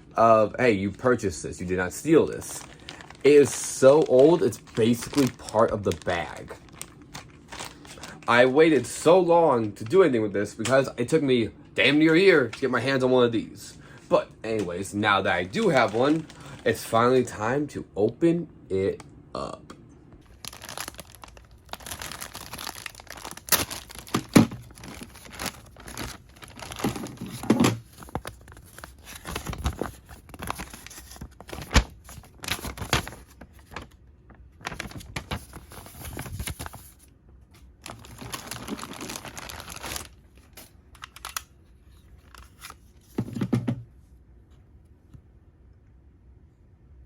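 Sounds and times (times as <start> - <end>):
plastic bag tearing and crinkling: 2.1 - 8.5, 15.3 - 16.9, 20.2 - 34.0, 34.6 - 37.0, 37.8 - 41.4.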